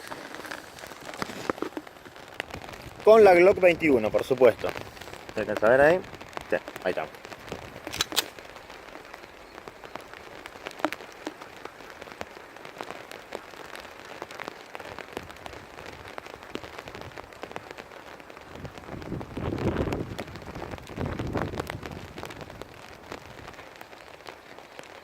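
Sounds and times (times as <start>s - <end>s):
heavy rain falling: 0.0s - 25.0s
raindrops ticking: 0.0s - 25.0s.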